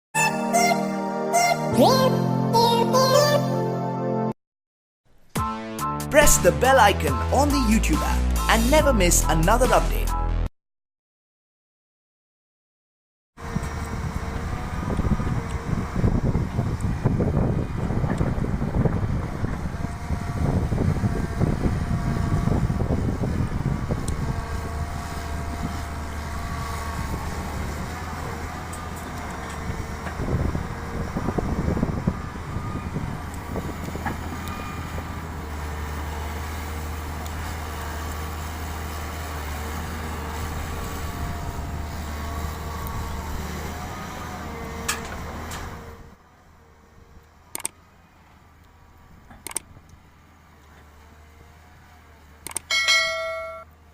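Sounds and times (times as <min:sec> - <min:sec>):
excavator diesel engine running: 0:13.4 - 0:53.9.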